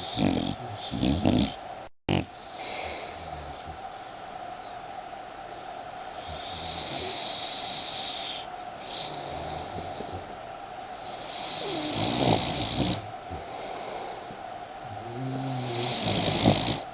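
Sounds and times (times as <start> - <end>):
dog snoring: 0.0 - 3.8, 6.2 - 10.3, 11.0 - 14.2, 14.9 - 16.9.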